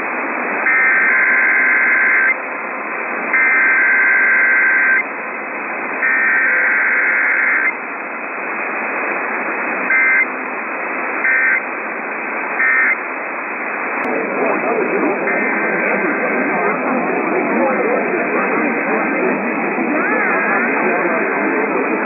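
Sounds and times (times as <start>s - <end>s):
radio static hiss: 0.0s - 22.0s
short data bursts: 3.3s - 5.1s, 6.0s - 7.8s, 9.7s - 10.4s, 11.0s - 11.7s, 12.5s - 13.1s.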